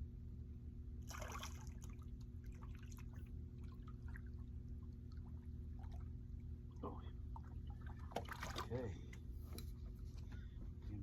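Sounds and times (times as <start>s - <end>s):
low hum: 0.0s - 11.0s
water splashing: 1.0s - 8.8s
water trickling and dripping: 1.2s - 8.8s.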